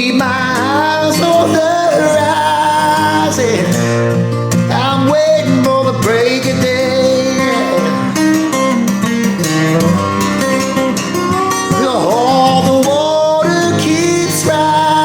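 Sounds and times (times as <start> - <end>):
man singing long held notes: 0.0 - 4.0, 4.7 - 8.4, 11.6 - 15.0
acoustic guitar: 0.0 - 15.0.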